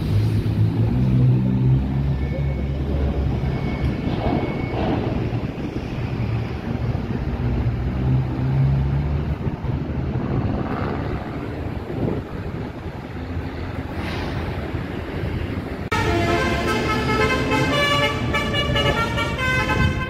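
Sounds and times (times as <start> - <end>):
large vehicle engine humming: 0.0 - 20.0.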